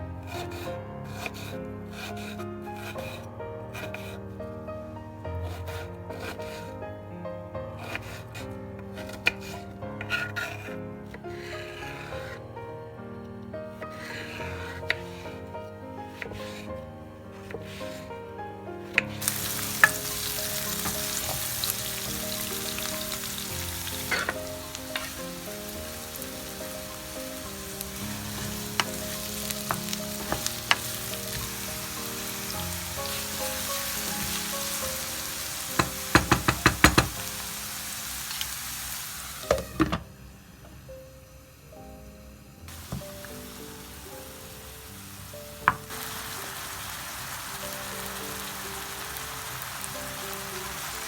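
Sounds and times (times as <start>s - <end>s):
soft piano music: 0.0s - 51.0s
food sizzling in a pan: 9.0s - 12.4s, 13.8s - 15.4s, 16.1s - 16.7s, 17.4s - 18.1s, 18.9s - 51.0s.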